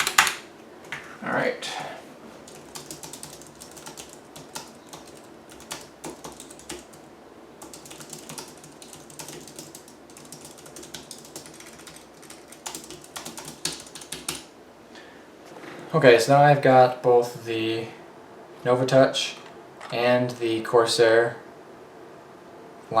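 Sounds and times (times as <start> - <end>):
computer keyboard typing: 0.0 - 0.4, 2.4 - 14.5.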